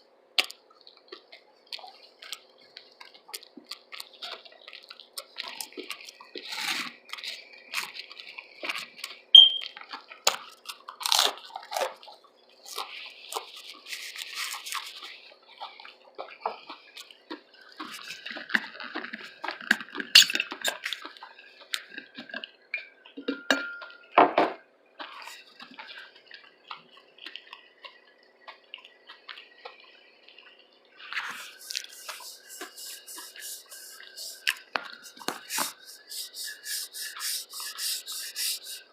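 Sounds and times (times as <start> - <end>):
wet chewing and crunching: 0.4 - 23.2, 25.0 - 38.9
rasping rubbing noise: 31.2 - 38.8
sharp mouth clicks: 31.3 - 38.8.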